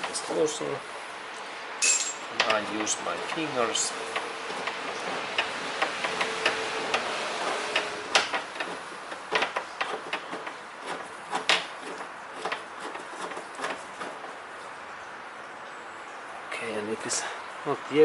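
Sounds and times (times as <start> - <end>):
sharp metal knocks: 1.8 - 12.6.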